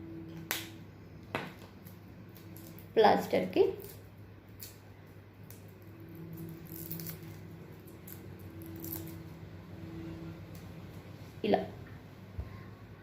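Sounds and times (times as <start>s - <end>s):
faint low hum: 0.0s - 13.0s
hands rustling tape: 1.5s - 9.4s.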